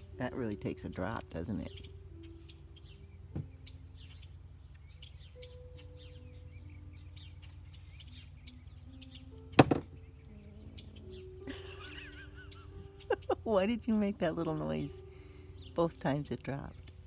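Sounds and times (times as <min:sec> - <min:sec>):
high bird chirps: 0:00.0 - 0:13.4.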